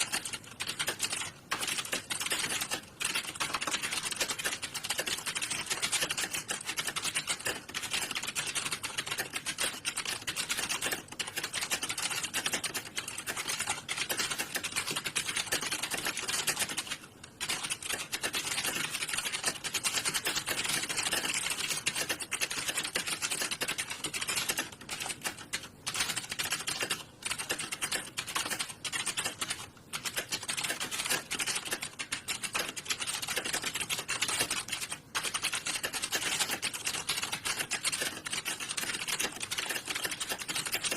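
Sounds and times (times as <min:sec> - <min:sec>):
fast keyboard typing: 0:00.0 - 0:40.9.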